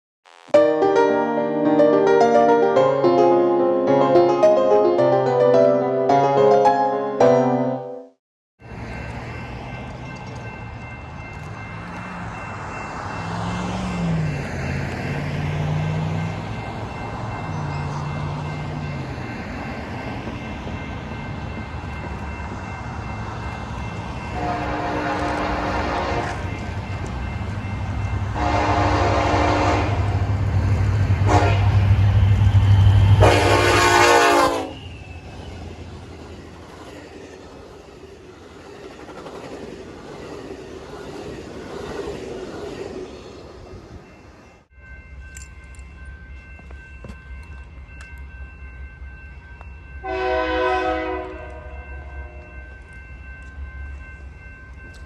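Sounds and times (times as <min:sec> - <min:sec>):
passing train: 0:00.3 - 0:55.0
train horn blasts: 0:24.3 - 0:26.5, 0:28.4 - 0:30.3, 0:31.2 - 0:32.0, 0:33.0 - 0:34.9, 0:50.0 - 0:52.6.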